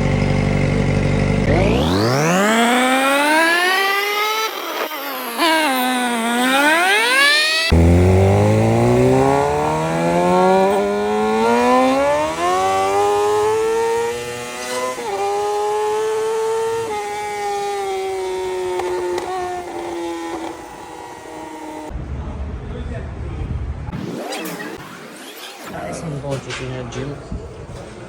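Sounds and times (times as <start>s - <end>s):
motorcycle accelerating: 0.0s - 22.0s.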